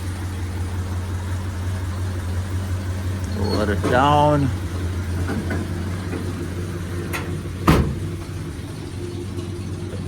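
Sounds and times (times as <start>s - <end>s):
car engine idling: 0.0s - 10.0s
loud clunk: 7.1s - 8.4s.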